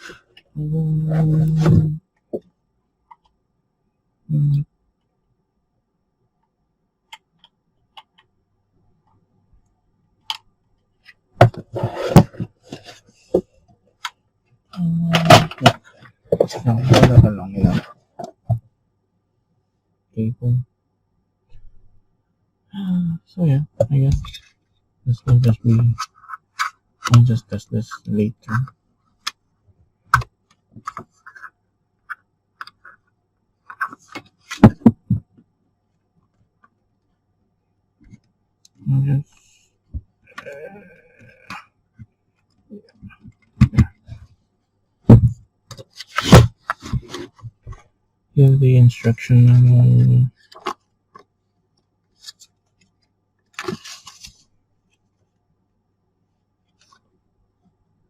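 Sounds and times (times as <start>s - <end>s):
knocks and rustling: 11.4s - 13.5s.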